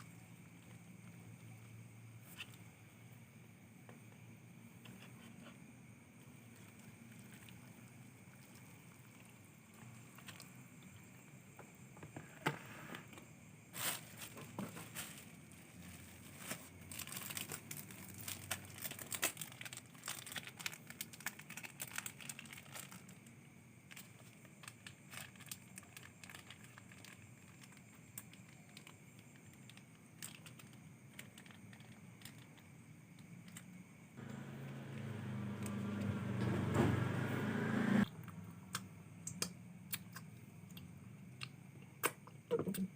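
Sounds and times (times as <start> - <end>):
crinkling and rustling: 12.0 - 33.7
low hum: 34.2 - 38.4.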